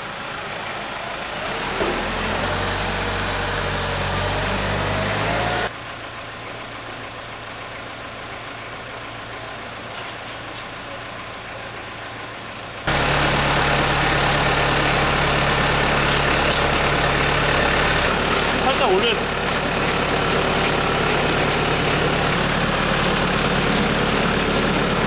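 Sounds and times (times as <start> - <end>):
machine engine humming: 12.9 - 25.0.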